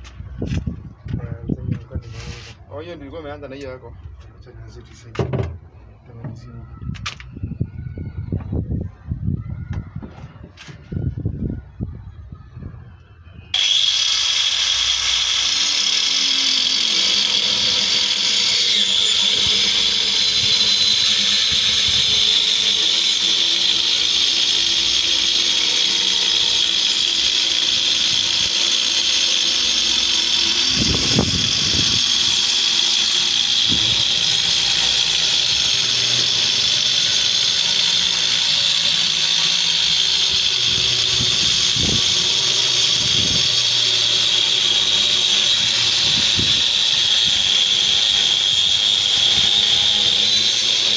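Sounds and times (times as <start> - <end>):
power tool high-pitched whine: 2.0 - 3.5, 13.5 - 50.9.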